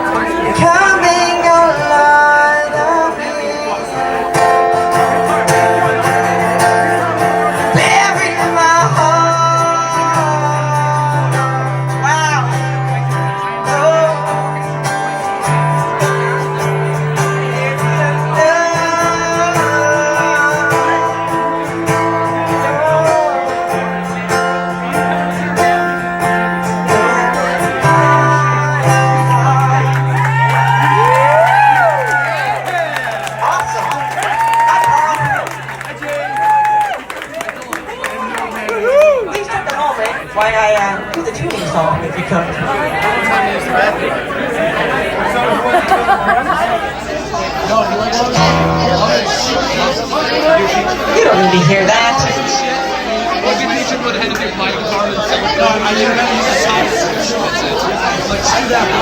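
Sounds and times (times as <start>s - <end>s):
held bass notes: 0.0s - 36.9s, 48.1s - 53.5s
guitar playing: 0.0s - 38.1s, 46.8s - 59.0s
person singing: 0.1s - 14.6s, 15.5s - 23.8s, 26.8s - 31.5s.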